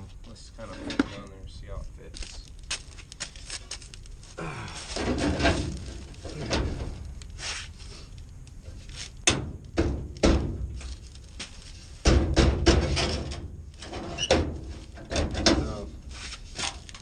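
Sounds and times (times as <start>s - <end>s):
metal panel scraping: 0.6s - 1.2s, 4.9s - 7.7s, 11.7s - 16.8s
sharp metal clunks: 9.2s - 10.7s.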